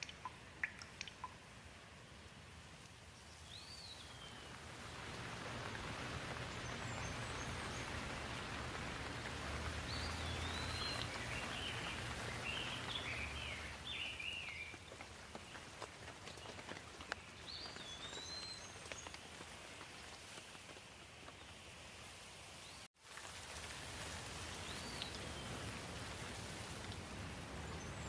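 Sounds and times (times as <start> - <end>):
rain falling: 2.5 - 28.0
bird chirping: 9.7 - 14.9.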